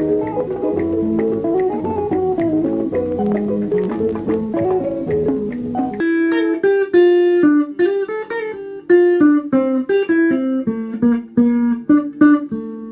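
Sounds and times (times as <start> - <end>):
backing music with bass: 0.0 - 8.0
guitar plucking a melody: 0.0 - 12.9.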